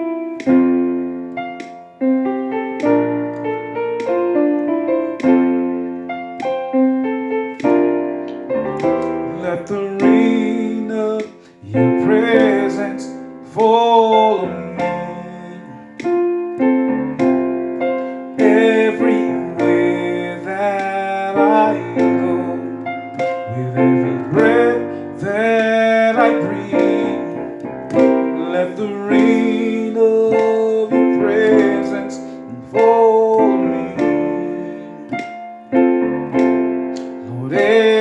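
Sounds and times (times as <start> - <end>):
piano playing slow chords: 0.0 - 38.0
person singing with wavering pitch: 9.2 - 16.0, 23.5 - 35.2, 37.3 - 38.0.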